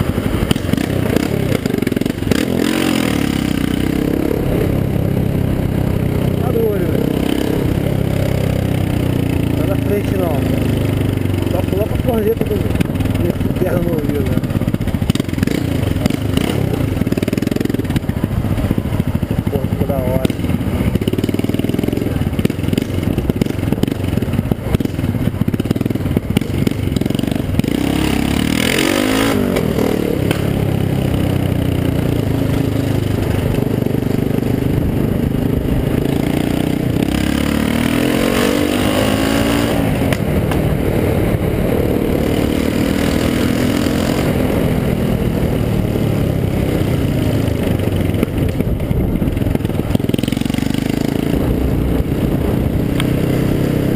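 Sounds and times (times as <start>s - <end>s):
motorcycle engine revving loud: 0.0s - 53.9s.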